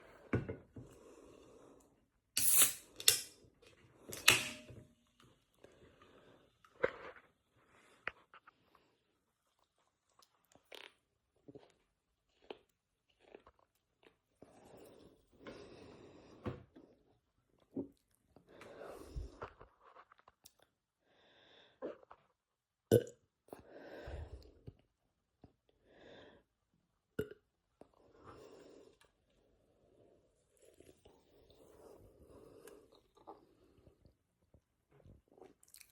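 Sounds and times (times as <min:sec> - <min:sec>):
can opening crack: 0:04.2 - 0:04.7.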